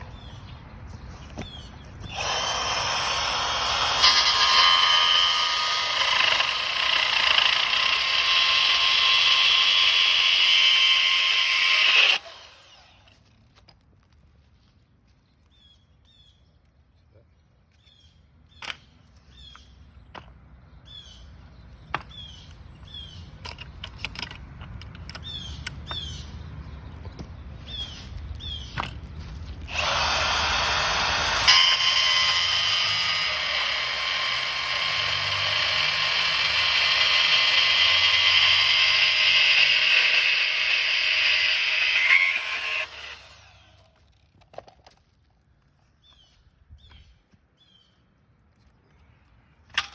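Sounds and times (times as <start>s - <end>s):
small birds chirping: 0.0s - 3.8s, 14.4s - 24.1s, 25.0s - 29.7s, 45.2s - 49.6s
bandsaw grinding through metal: 2.0s - 13.2s, 29.6s - 44.0s.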